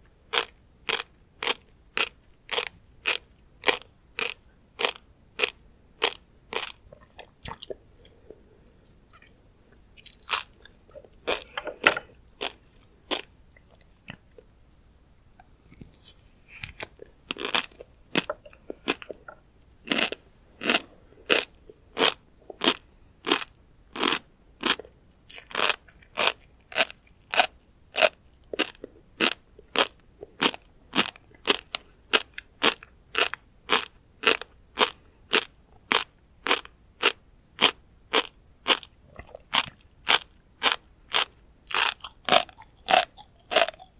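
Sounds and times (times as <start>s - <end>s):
crunchy chewing of fish roe: 0.0s - 8.5s, 9.1s - 14.9s, 15.7s - 43.9s.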